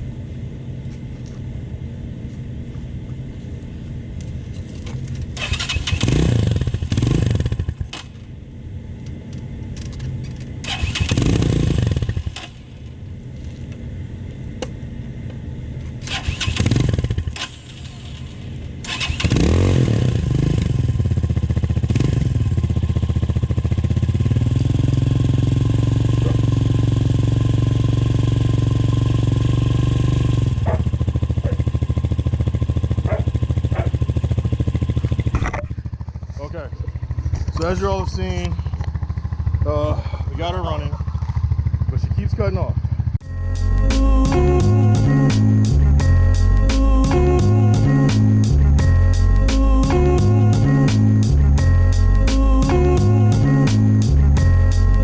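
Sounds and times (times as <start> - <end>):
motorcycle engine revving and idling: 4.8 - 8.4, 9.8 - 13.7, 16.0 - 55.0.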